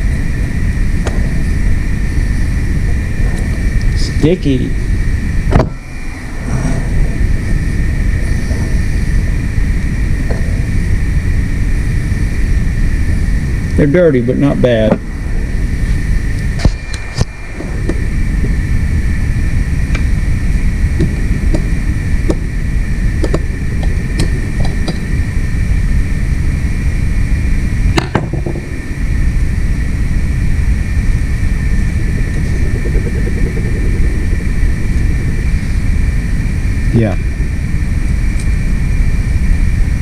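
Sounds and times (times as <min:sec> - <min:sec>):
high whine: 0:00.0 - 0:40.0
low mechanical rumble: 0:00.0 - 0:40.0.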